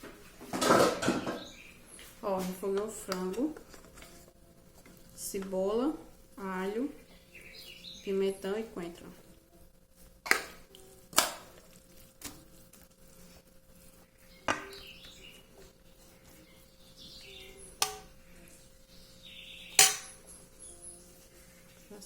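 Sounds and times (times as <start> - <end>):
utensils clinking against cookware: 17.8 - 18.2, 19.7 - 20.4.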